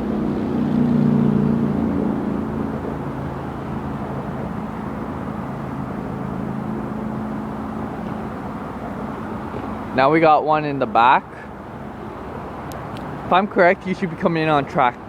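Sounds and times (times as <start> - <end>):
diesel locomotive engine humming: 0.0 - 15.0.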